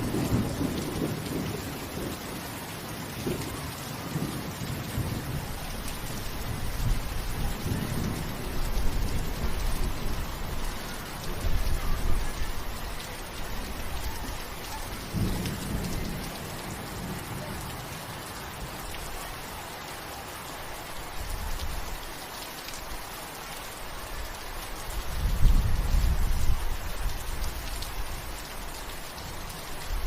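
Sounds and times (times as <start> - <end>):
distant thunder rumbling: 0.0 - 2.5, 3.1 - 18.3
steady rain falling: 0.0 - 30.0.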